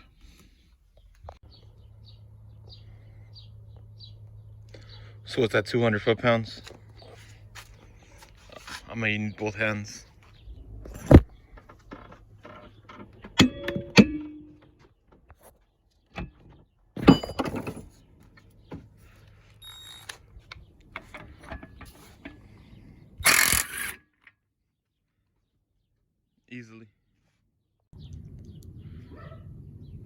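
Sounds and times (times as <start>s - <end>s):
metal tools clanking: 11.6s - 14.7s, 16.2s - 18.6s, 19.7s - 22.6s.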